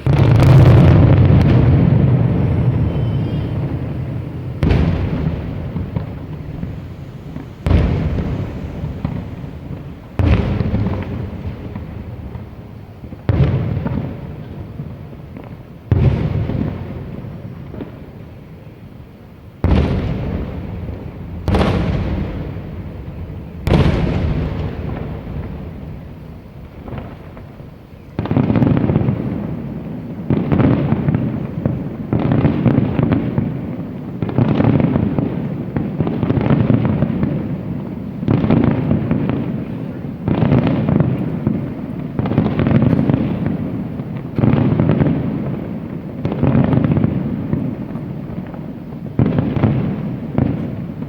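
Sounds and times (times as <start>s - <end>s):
firework shells bursting: 0.0s - 14.5s, 37.9s - 48.4s.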